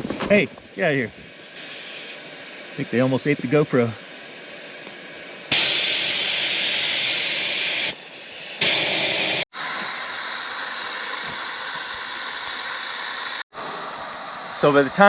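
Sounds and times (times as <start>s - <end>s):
air hissing out of a tire: 0.7s - 2.9s, 3.8s - 15.0s.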